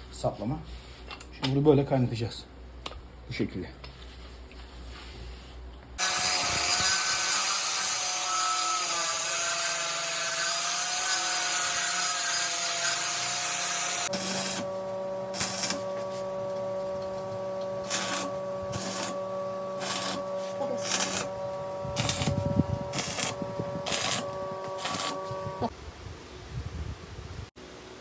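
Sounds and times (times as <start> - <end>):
welding arc hissing and crackling: 6.0 - 14.7, 15.3 - 15.9, 17.8 - 19.2, 19.8 - 21.4, 22.0 - 25.7
steady hum: 13.9 - 28.0.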